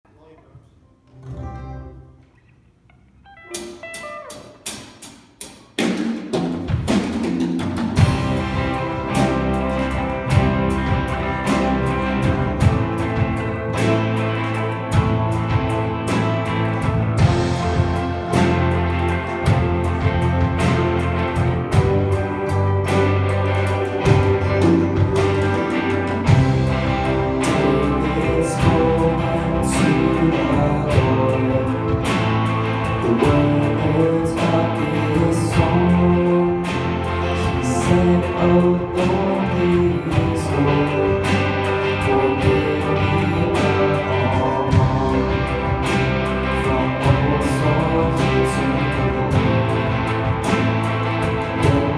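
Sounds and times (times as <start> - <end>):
electric guitar: 1.1 - 51.9
live band playing: 3.3 - 51.9
drum and cymbal hits: 3.6 - 33.7.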